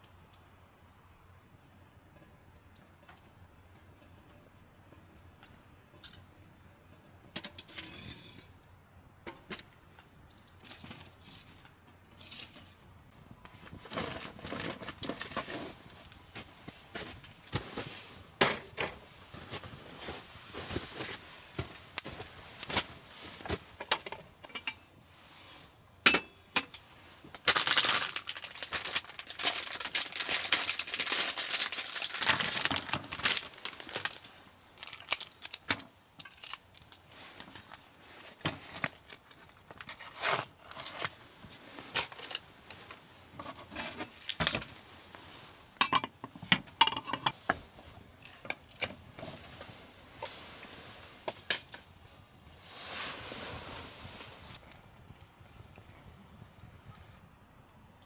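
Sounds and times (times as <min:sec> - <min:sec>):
camping gear clicks and clinks: 0:13.3 - 0:25.4, 0:26.1 - 0:57.2
material rustling and crumpling: 0:13.5 - 0:25.8, 0:26.8 - 0:57.2.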